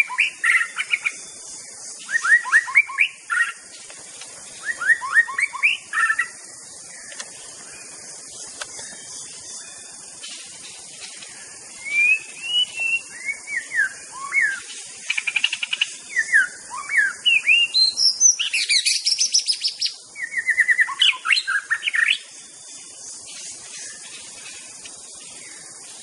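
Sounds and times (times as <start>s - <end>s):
bird singing whistled phrases: 0.0s - 1.2s, 2.0s - 3.6s, 4.6s - 6.4s, 11.8s - 22.2s
high hiss: 0.0s - 26.0s.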